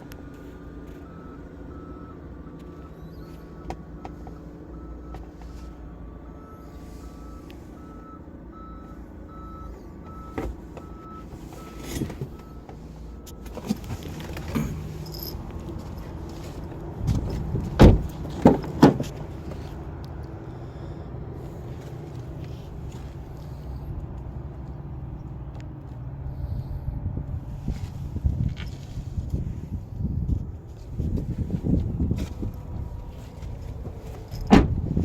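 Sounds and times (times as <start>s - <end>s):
car warning chime beeping: 0.9s - 13.6s.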